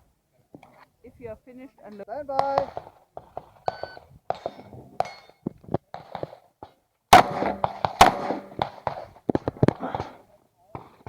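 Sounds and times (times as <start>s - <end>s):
gunshots with ringing: 7.1s - 9.0s.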